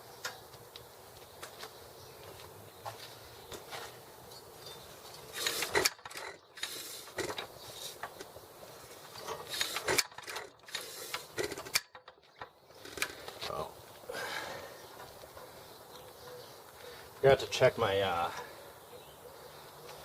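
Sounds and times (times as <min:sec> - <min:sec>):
metallic clanks and rattles: 0:05.3 - 0:08.2, 0:09.1 - 0:13.3.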